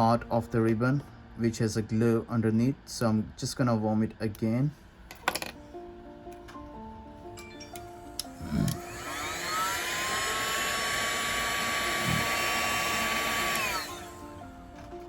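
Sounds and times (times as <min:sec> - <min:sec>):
hot-air blower motor whine: 0:06.2 - 0:15.0.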